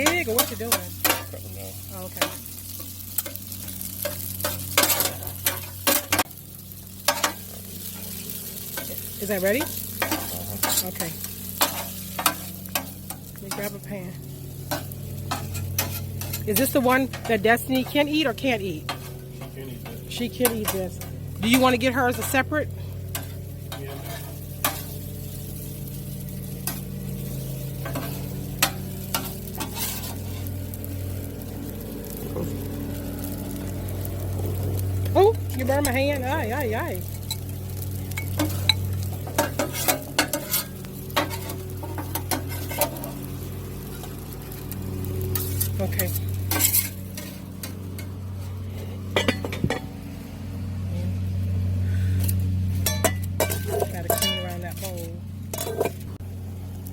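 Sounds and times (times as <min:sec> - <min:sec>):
metal utensil clicks on griddle: 0:00.0 - 0:01.4, 0:02.2 - 0:06.3, 0:07.0 - 0:08.1, 0:08.7 - 0:13.8, 0:14.7 - 0:18.0, 0:18.9 - 0:22.4, 0:23.1 - 0:25.0, 0:26.6 - 0:26.8, 0:27.8 - 0:30.2, 0:38.1 - 0:43.1, 0:45.4 - 0:48.2
food sizzling on a griddle: 0:00.0 - 0:56.9
steady low hum: 0:00.0 - 0:56.9.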